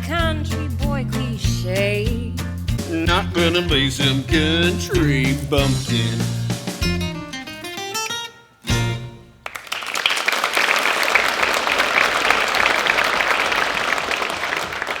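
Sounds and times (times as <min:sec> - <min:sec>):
applause: 0:09.4 - 0:15.0.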